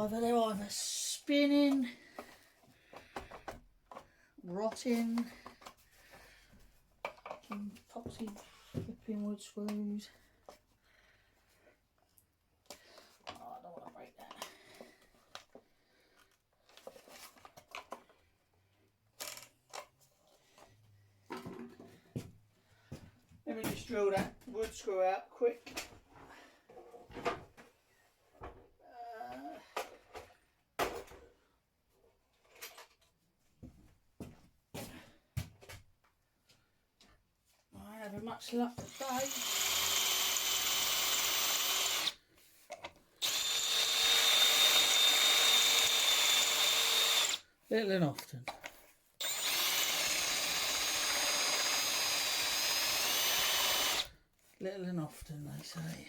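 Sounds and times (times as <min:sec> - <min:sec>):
power drill running: 0:38.8 - 0:42.2, 0:43.2 - 0:47.4, 0:49.2 - 0:54.2.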